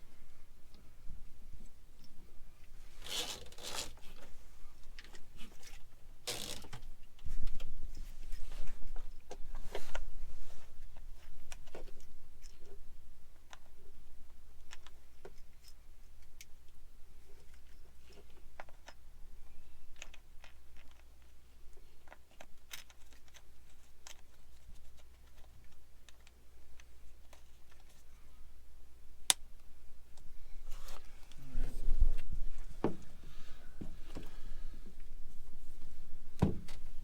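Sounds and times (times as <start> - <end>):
low steady hum: 10.2 - 37.0.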